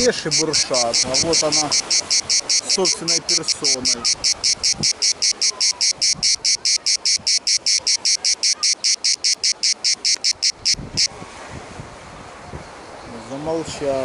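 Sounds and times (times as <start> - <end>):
cicada buzzing: 0.0 - 11.1.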